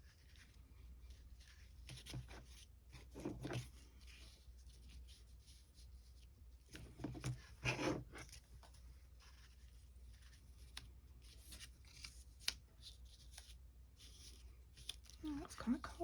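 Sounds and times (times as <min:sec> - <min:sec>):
paper rustling: 0:06.6 - 0:15.2.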